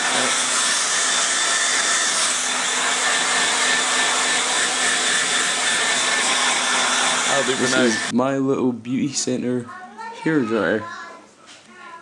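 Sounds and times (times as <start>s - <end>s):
hair dryer blowing: 0.0s - 8.1s.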